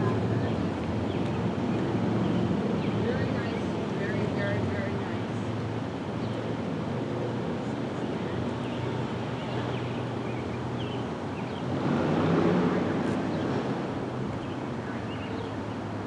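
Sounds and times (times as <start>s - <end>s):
vehicle rumble: 0.0s - 16.0s.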